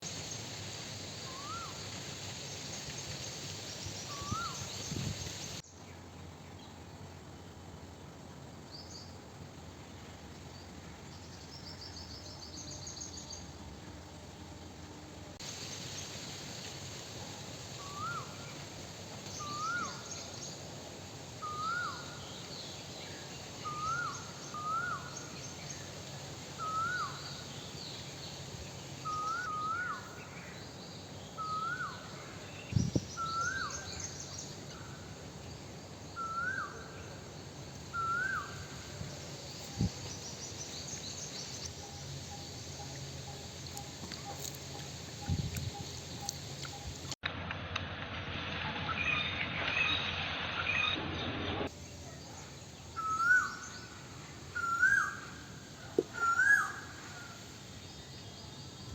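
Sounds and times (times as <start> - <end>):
bird repeating rising call: 21.4 - 22.3, 23.5 - 25.4, 26.6 - 27.6, 29.0 - 30.2, 37.9 - 38.8, 53.0 - 54.0, 54.6 - 55.4, 56.0 - 57.4.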